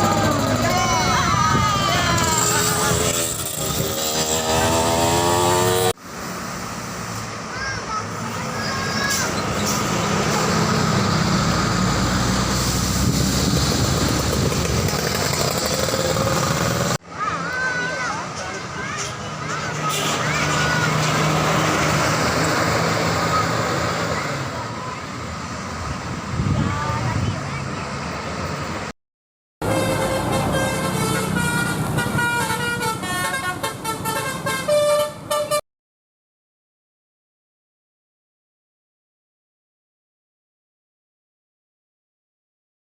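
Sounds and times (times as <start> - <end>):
diesel bus engine running: 0.0 - 3.6, 6.1 - 28.9, 29.6 - 35.5
bus horn playing a tune: 29.6 - 35.6.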